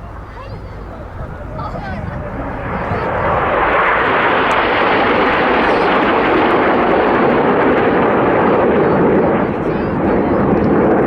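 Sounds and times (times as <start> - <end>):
jet aircraft passing: 0.0 - 11.0.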